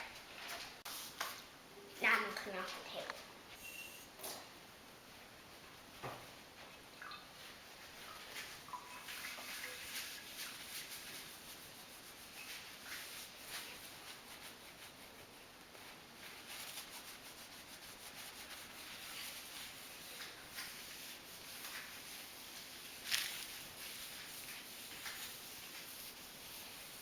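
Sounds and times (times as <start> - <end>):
hand wiping a tabletop: 8.4 - 27.0.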